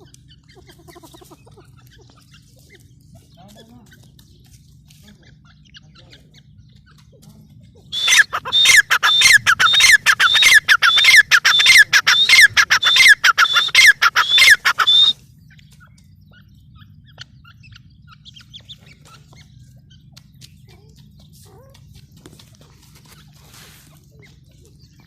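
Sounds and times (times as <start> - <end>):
francolin calling: 7.9 - 15.2.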